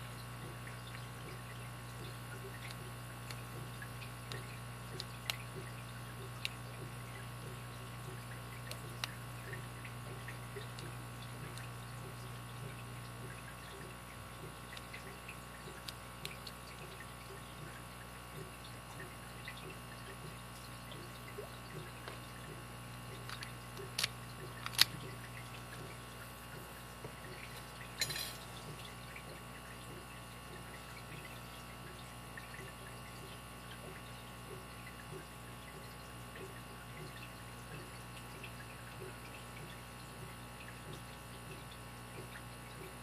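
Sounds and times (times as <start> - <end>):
steady low hum: 0.0 - 43.0
rattle of clicks: 23.2 - 25.0.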